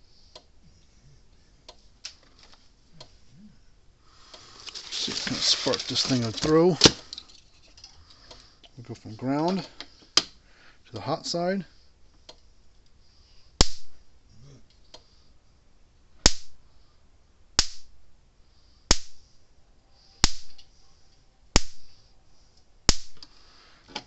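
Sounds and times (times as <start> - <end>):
electric spark snaps: 13.6 - 13.9, 16.2 - 16.6, 17.6 - 17.9, 18.9 - 19.3, 20.2 - 20.7, 21.5 - 22.0, 22.9 - 23.3.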